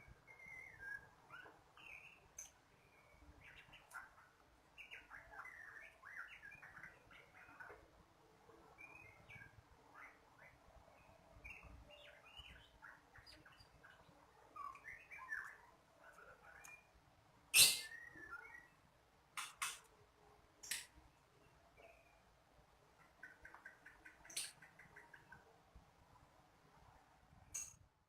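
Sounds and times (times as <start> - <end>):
bird short high chirps: 17.6 - 18.6
sharp clicks: 19.4 - 19.9.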